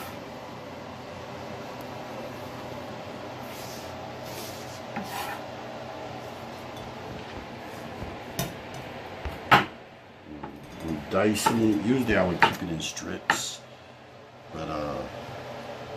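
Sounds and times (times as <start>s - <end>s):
knife cutting on wooden board: 4.9s - 5.5s.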